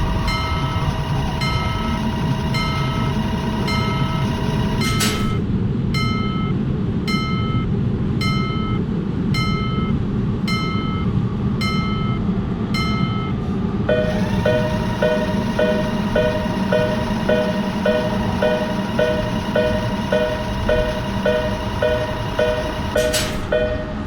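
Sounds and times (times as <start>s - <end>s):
railroad crossing bell chiming: 0.0s - 5.4s, 6.0s - 24.0s
low rumble of passing train: 0.0s - 24.0s.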